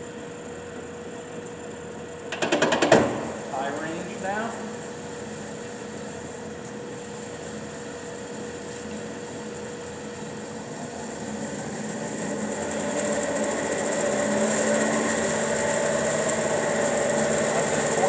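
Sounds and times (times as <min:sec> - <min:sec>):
band saw running: 0:10.4 - 0:18.0.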